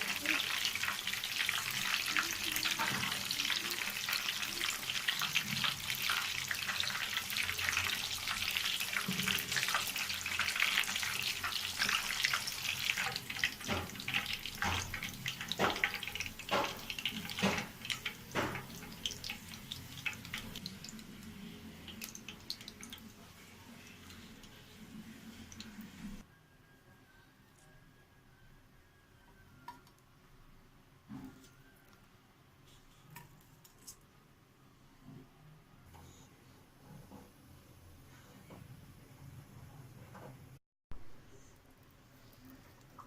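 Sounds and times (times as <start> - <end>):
chicken frying with sizzling crackle: 0.0 - 26.2.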